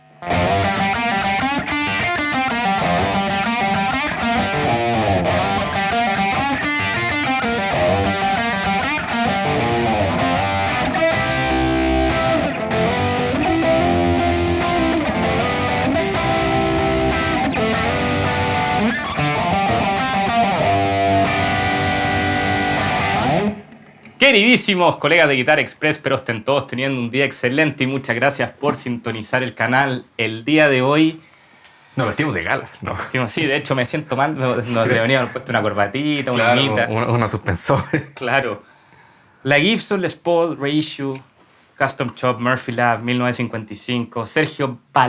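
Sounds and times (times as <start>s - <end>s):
distorted electric guitar: 0.0s - 24.2s.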